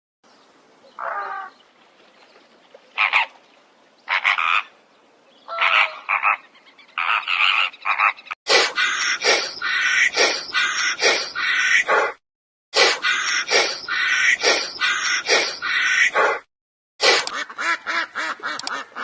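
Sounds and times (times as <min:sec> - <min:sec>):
animal croaking calls: 0:04.1 - 0:04.7, 0:05.5 - 0:06.4, 0:07.0 - 0:12.2, 0:12.8 - 0:16.4.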